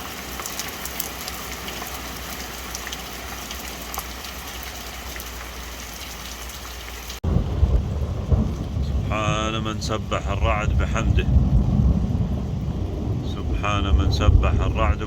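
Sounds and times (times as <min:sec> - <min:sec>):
heavy rain: 0:00.0 - 0:15.0
rain drops ticking: 0:00.0 - 0:15.0
thunder rumble: 0:07.2 - 0:15.0.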